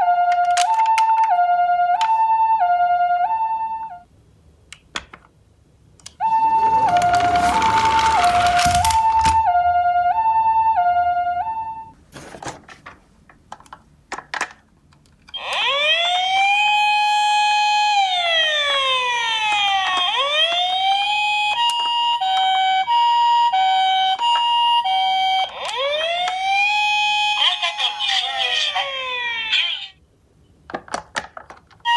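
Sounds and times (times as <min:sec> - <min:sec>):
toy siren: 0:00.0 - 0:04.0, 0:06.2 - 0:12.0, 0:15.3 - 0:30.0.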